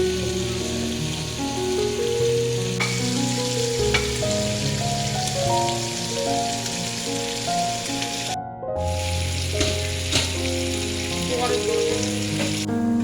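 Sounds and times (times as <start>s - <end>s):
soft background music: 0.0s - 13.0s
steady hiss: 0.0s - 13.0s.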